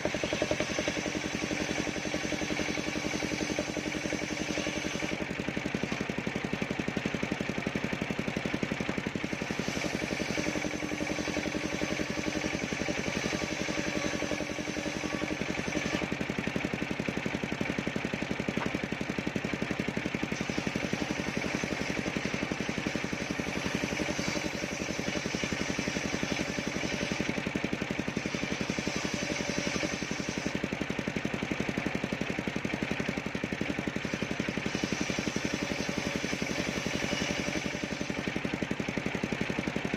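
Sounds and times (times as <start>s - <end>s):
spinning saw blade tone: 0.0s - 6.6s, 8.9s - 16.3s, 20.1s - 30.8s, 33.8s - 39.1s
sawmill engine running: 0.0s - 39.9s.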